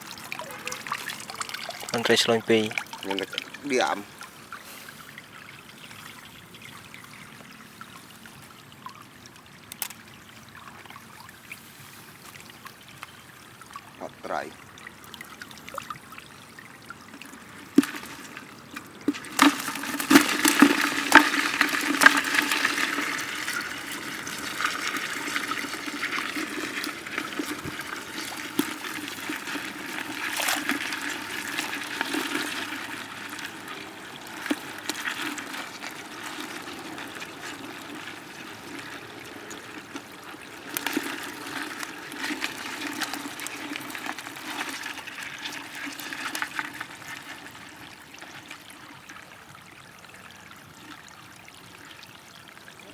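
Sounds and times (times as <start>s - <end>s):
water rushing and sloshing: 0.0s - 49.7s
sharp splashes and knocks: 17.7s - 33.3s.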